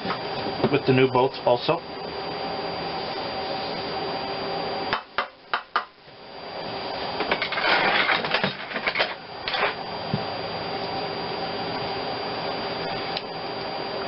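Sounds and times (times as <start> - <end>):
metal scraping and rattling: 7.3 - 9.8.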